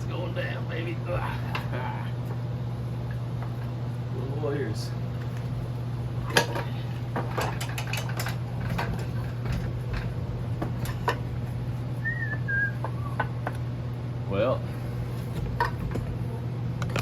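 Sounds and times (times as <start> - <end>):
steady low hum: 0.0 - 17.0
metal tools clinking and knocking: 6.3 - 11.2.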